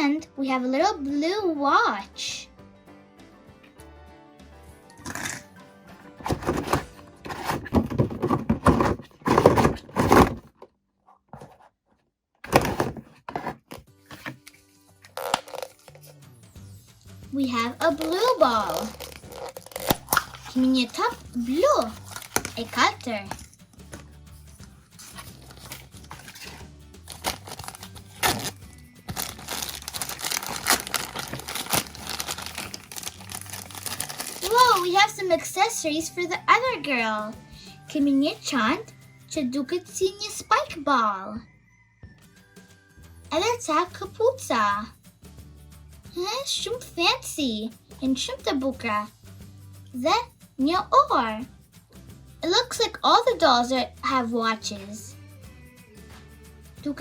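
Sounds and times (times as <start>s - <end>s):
plastic knocking: 6.2s - 10.7s
hands handling plastic toy parts: 6.2s - 11.7s, 12.5s - 16.1s, 17.7s - 24.1s, 25.0s - 35.2s
plastic packaging crinkling: 15.1s - 16.0s, 17.8s - 23.5s, 25.0s - 35.2s
background music with bass: 15.1s - 39.4s, 42.9s - 46.2s, 46.9s - 57.0s.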